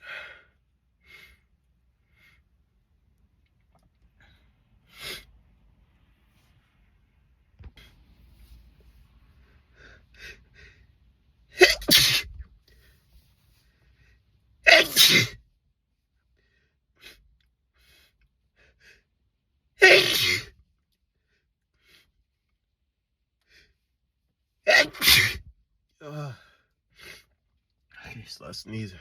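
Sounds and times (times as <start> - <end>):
man sneezing loudly: 11.6 - 12.4, 14.6 - 15.4, 19.8 - 20.6, 24.7 - 26.4.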